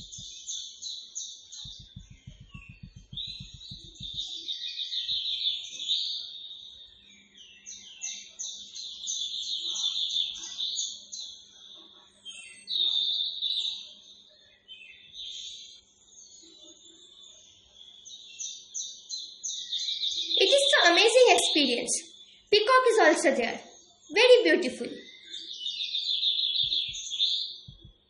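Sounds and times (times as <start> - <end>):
low rattling knocks: 0.0 - 0.3, 1.6 - 4.3
small birds chirping: 0.0 - 28.0.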